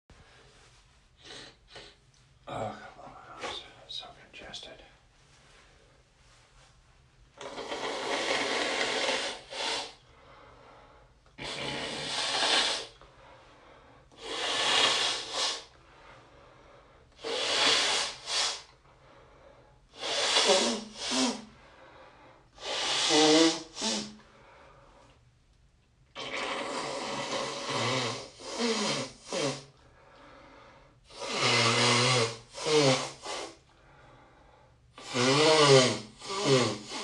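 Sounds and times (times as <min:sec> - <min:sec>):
person blowing nose: 0:01.2 - 0:02.0, 0:07.4 - 0:10.0, 0:11.4 - 0:13.0, 0:14.2 - 0:15.8, 0:17.2 - 0:18.8, 0:19.9 - 0:21.5, 0:22.6 - 0:24.2, 0:26.2 - 0:29.8, 0:31.1 - 0:33.6, 0:35.0 - 0:37.0.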